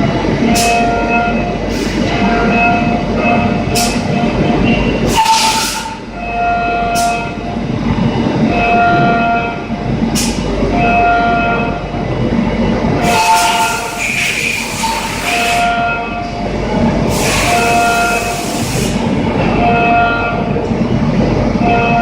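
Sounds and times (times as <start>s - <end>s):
short hissing bursts: 17.1s - 19.0s.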